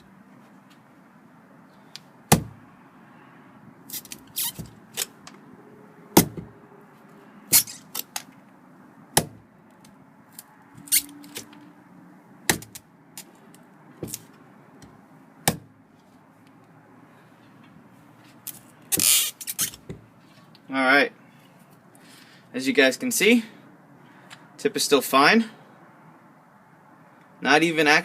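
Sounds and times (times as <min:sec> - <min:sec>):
knife stabbing into wood: 0:02.3 - 0:02.6, 0:06.2 - 0:06.5, 0:09.1 - 0:09.4.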